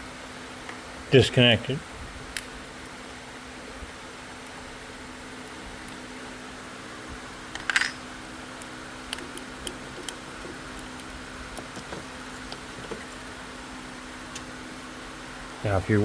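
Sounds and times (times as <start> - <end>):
steady low hum: 0.0 - 16.0
hand tools clicking on metal: 8.6 - 13.4.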